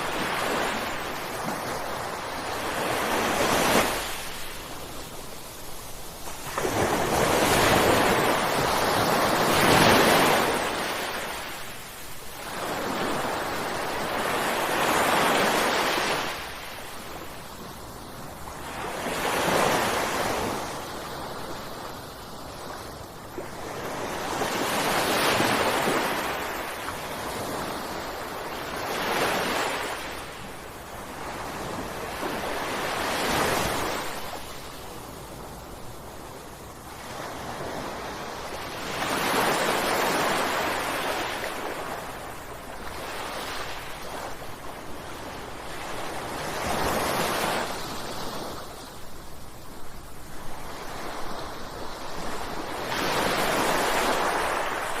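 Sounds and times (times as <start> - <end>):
ocean waves crashing: 0.0 - 17.4, 24.1 - 34.8, 36.9 - 49.1, 52.3 - 55.0.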